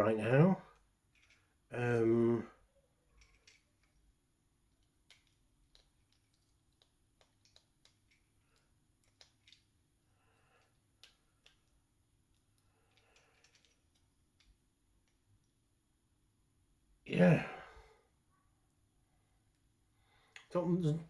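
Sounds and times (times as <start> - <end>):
plastic parts clicking and tapping: 0.8 - 1.5, 3.1 - 4.1, 4.7 - 9.8, 10.6 - 15.6.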